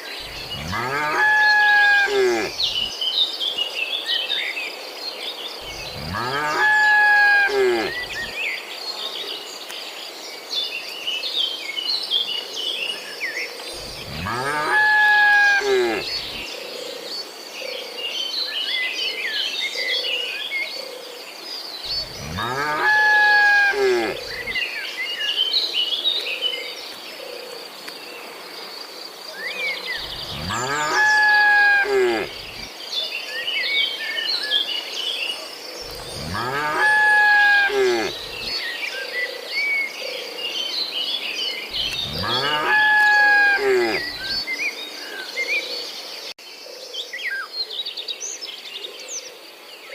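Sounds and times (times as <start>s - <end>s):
cattle mooing: 0.2s - 2.9s, 5.6s - 8.3s, 13.8s - 16.4s, 22.0s - 24.6s, 30.0s - 32.7s, 35.9s - 38.6s, 41.8s - 44.4s
bird chirps: 41.6s - 44.7s.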